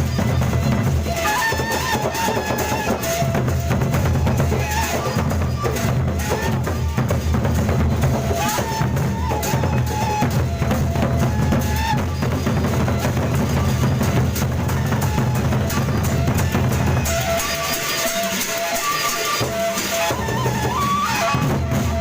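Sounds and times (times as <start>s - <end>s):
barrel drums beating: 0.0s - 22.0s
clashing cymbals: 12.1s - 22.0s.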